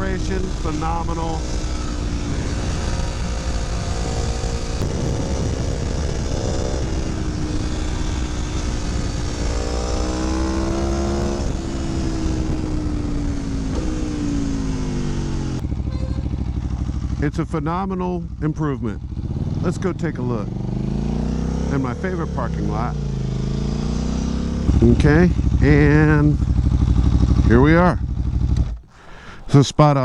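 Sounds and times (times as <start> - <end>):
low engine rumble: 0.0 - 30.0
motorcycle engine accelerating: 0.0 - 30.0.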